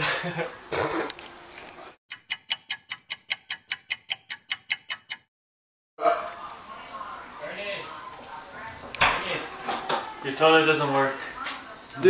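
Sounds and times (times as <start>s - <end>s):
rapid clock-like ticking: 2.1s - 5.3s.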